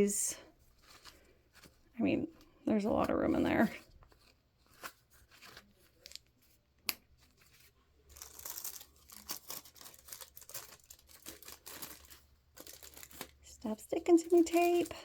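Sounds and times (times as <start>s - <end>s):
tape and wrapping tearing: 8.1s - 13.4s.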